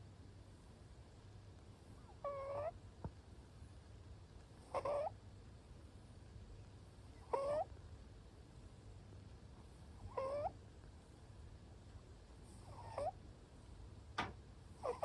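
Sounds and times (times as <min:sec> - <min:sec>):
cat snoring: 0:01.8 - 0:02.7, 0:04.6 - 0:05.1, 0:07.0 - 0:07.7, 0:09.6 - 0:10.5, 0:12.4 - 0:13.2, 0:14.7 - 0:15.0.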